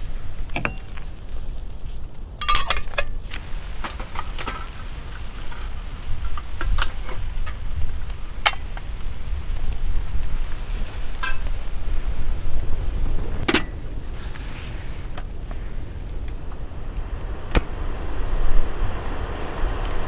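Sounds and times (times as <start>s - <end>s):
cooking gear clinking: 2.4s - 3.2s
wind buffeting microphone: 3.2s - 20.0s.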